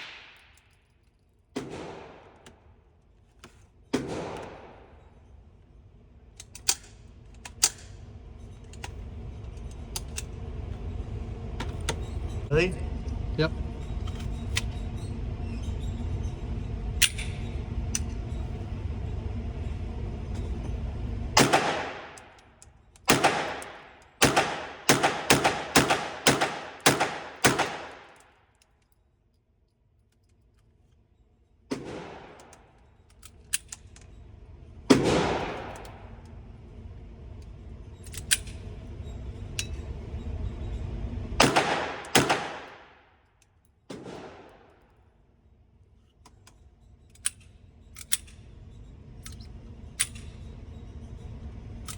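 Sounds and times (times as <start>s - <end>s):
suppressed gunshots: 0.0s - 0.5s, 1.6s - 2.6s, 3.9s - 5.0s, 21.4s - 22.3s, 23.1s - 28.2s, 31.7s - 32.7s, 34.9s - 36.1s, 41.4s - 43.0s, 43.9s - 44.8s
low steady rumble: 0.0s - 51.9s.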